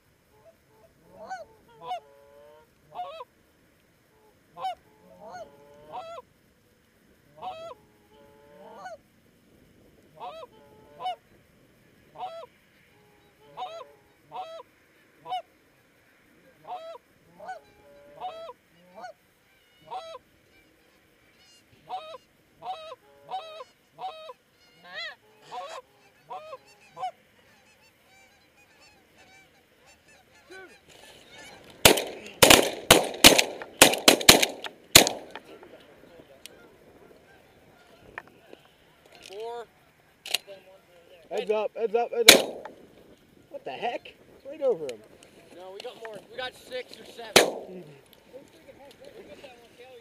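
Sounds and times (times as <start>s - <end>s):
goose honking: 0.3s - 3.3s, 4.1s - 6.3s, 7.3s - 9.0s, 10.1s - 11.2s, 12.2s - 15.4s, 16.6s - 32.4s
shotgun shots: 31.8s - 35.5s, 42.2s - 42.8s, 47.3s - 47.9s.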